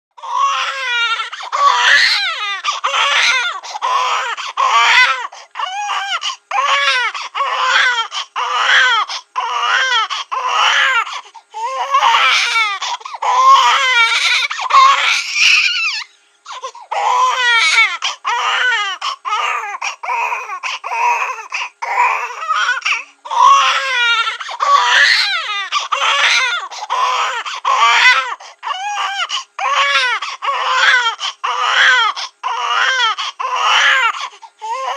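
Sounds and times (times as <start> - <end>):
cartoon baby crying: 0.3 - 5.2, 11.8 - 16.1, 17.0 - 34.1.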